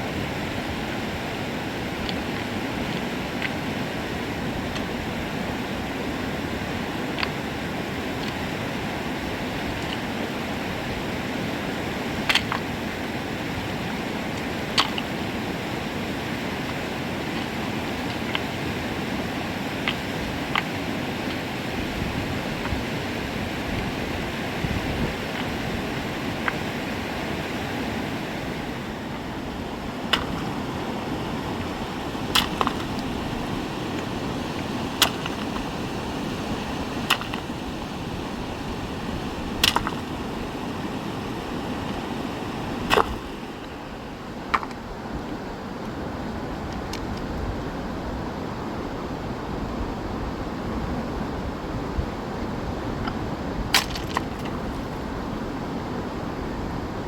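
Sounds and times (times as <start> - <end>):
river water rushing: 0.0 - 57.0
sharp clicks or knocks: 39.6 - 40.0.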